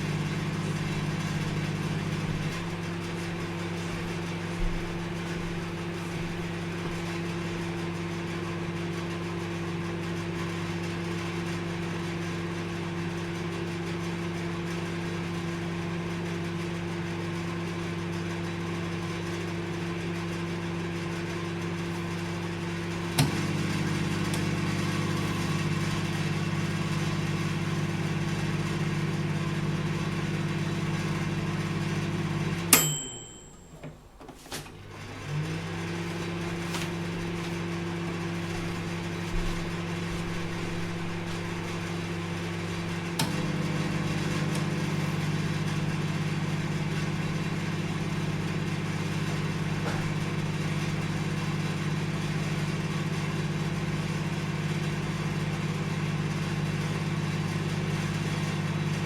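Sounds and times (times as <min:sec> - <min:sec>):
microwave oven humming: 0:00.0 - 0:59.0
microwave clicks: 0:23.1 - 0:24.7, 0:32.6 - 0:34.8.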